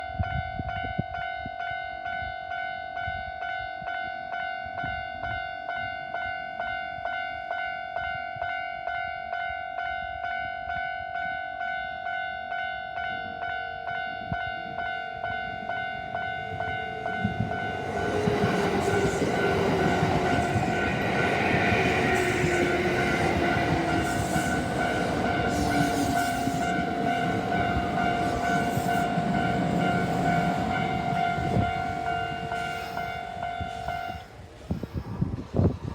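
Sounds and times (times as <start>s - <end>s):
level crossing alarm bell: 1.3s - 34.2s
train whine: 13.0s - 35.9s
electric train running noise: 14.6s - 35.9s.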